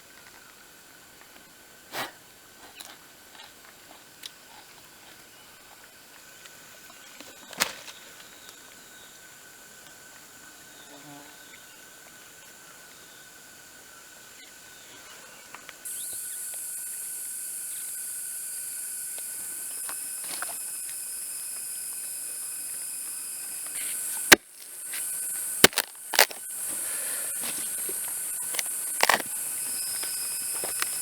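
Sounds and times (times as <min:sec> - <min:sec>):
forest insect drone: 0:00.0 - 0:31.0.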